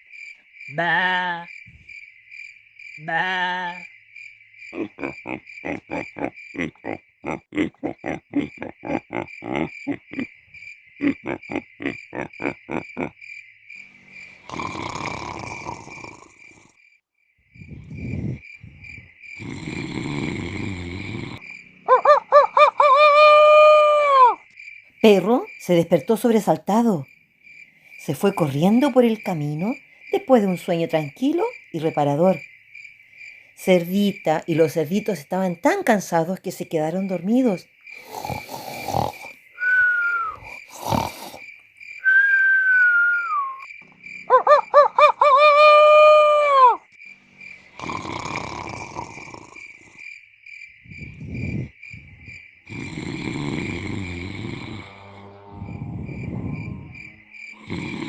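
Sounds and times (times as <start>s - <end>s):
crickets chirping: 0.0s - 58.0s
loud snores: 14.0s - 16.9s, 17.7s - 18.4s, 19.4s - 21.4s, 37.9s - 39.4s, 40.2s - 41.5s, 47.6s - 50.1s, 52.6s - 58.0s
rooster crowing: 21.9s - 24.4s, 44.3s - 46.8s.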